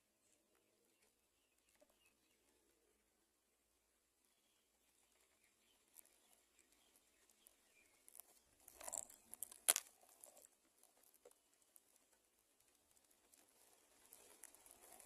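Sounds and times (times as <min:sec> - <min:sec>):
birds rustling in a nest: 0:04.6 - 0:15.0.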